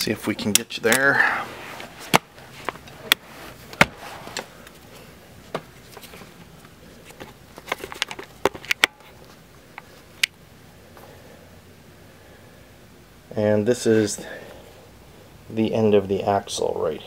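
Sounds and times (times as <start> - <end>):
camera handling clicks and knocks: 7.1 - 9.1.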